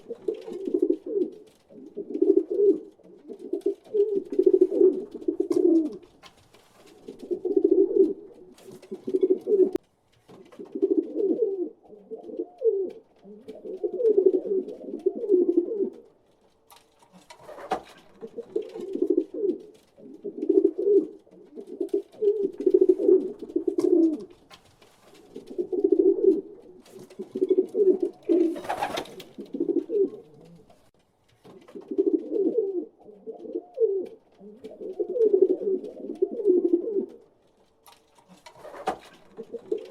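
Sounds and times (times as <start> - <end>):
pigeons cooing: 0.0 - 6.2, 6.8 - 9.8, 10.5 - 16.1, 17.2 - 24.4, 25.2 - 30.9, 31.6 - 37.3, 38.3 - 39.9
wing flutters: 21.6 - 32.1, 37.8 - 39.9.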